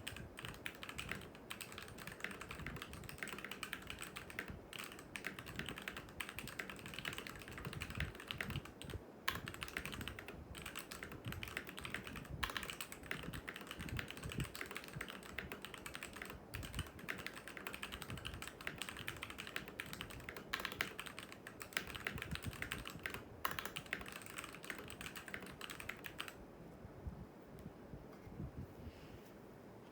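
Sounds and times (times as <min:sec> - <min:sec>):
mechanical keyboard typing: 0:00.0 - 0:26.4.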